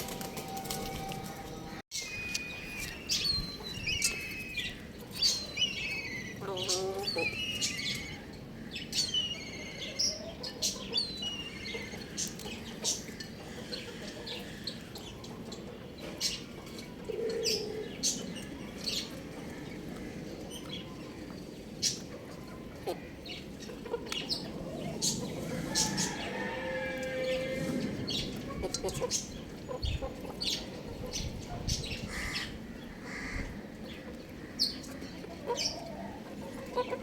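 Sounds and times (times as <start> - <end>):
chicks peeping and chirping: 0.1 - 19.4, 27.4 - 37.0
lower chicken call: 25.6 - 28.0.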